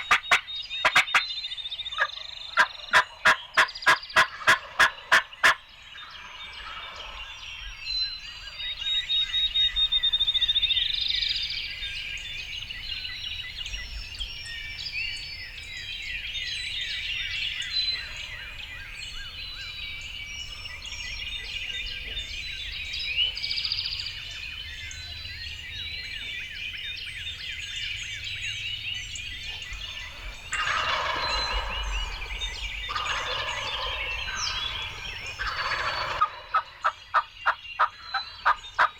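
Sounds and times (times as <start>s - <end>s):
turkeys gobbling: 0.0s - 1.3s, 2.0s - 7.2s, 29.4s - 38.9s
songbirds chirping: 0.0s - 38.9s.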